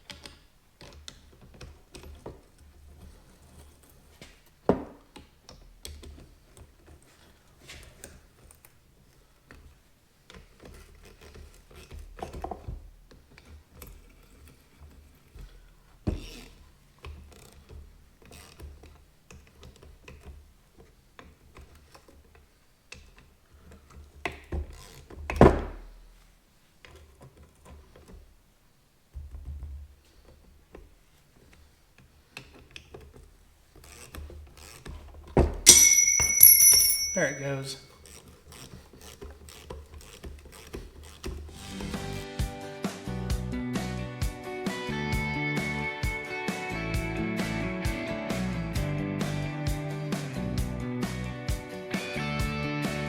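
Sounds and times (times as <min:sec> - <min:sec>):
metal parts clicking and clanking: 0:35.4 - 0:37.6.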